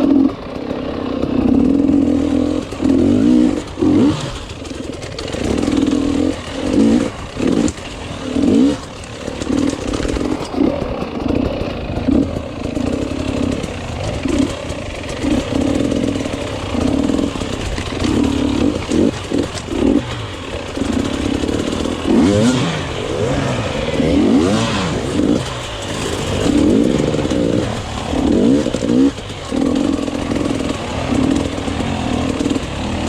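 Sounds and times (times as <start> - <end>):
motorcycle engine revving: 0.0 - 33.0.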